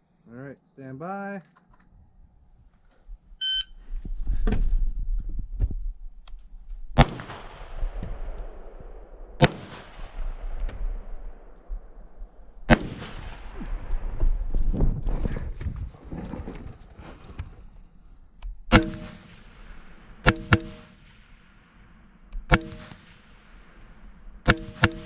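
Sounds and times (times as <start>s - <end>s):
rifle shots with rolling echo: 6.9s - 14.8s, 18.6s - 25.0s.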